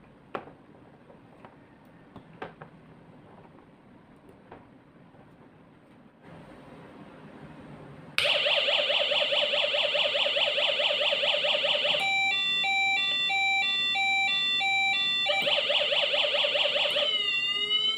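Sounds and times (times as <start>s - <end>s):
electronic police siren: 8.2s - 17.9s.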